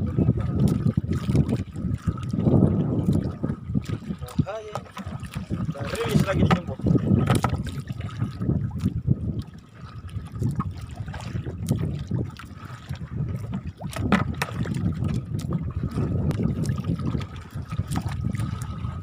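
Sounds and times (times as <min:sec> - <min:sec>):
water splashing against boat hull: 0:00.0 - 0:19.0
knocks and clicks: 0:06.4 - 0:07.6.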